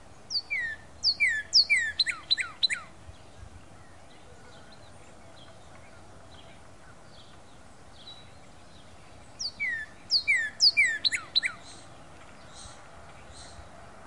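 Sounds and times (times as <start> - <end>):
faint high bird chirps: 0.2 - 13.8
bird singing down-slurred whistles: 0.3 - 2.9, 8.0 - 13.6.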